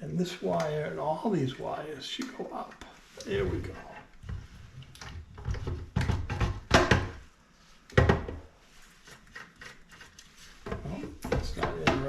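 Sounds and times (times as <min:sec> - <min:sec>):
knocks and clunks of mixer parts: 0:05.1 - 0:07.2, 0:07.9 - 0:08.4, 0:10.7 - 0:12.0.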